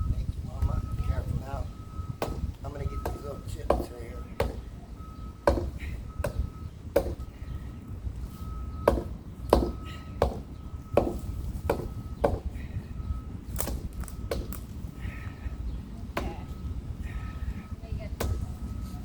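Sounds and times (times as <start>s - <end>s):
hand tool chopping wood: 2.2s - 4.7s, 5.4s - 7.3s, 8.8s - 12.5s, 13.6s - 14.7s, 16.1s - 16.5s.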